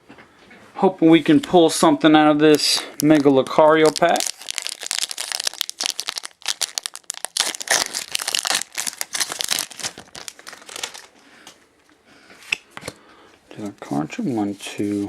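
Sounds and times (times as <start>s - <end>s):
foil wrapper crinkling: 2.5s - 11.2s.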